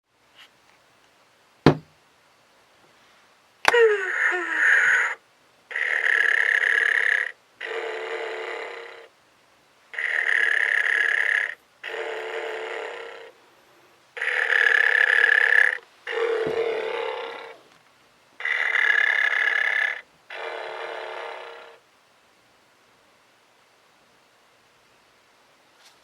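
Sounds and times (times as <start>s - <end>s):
low knock: 1.7s - 1.9s
electronic toy snoring: 3.8s - 9.1s, 9.9s - 13.4s, 14.2s - 17.7s, 18.4s - 21.8s.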